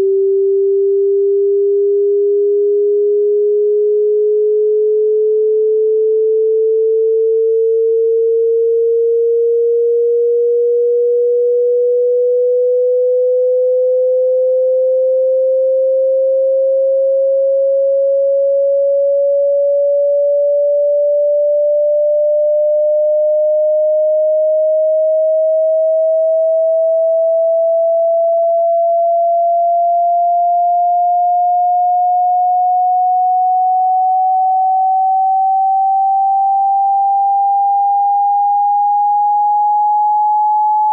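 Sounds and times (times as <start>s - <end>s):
rising sine test tone: 0.0s - 40.9s.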